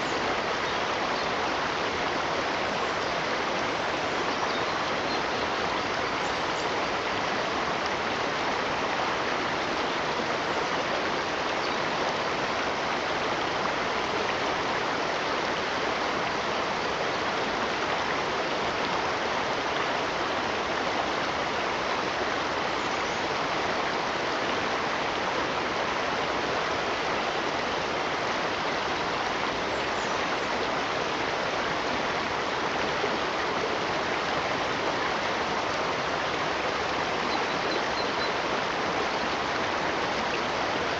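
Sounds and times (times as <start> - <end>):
water rushing: 0.0 - 40.9.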